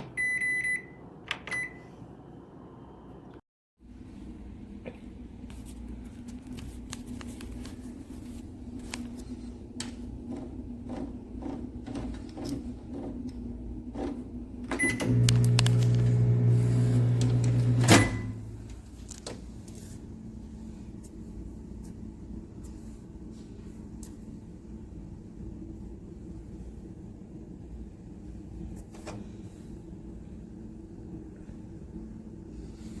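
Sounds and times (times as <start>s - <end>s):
microwave beep: 0.0s - 2.0s, 14.7s - 18.6s
microwave electrical hum: 0.0s - 33.0s.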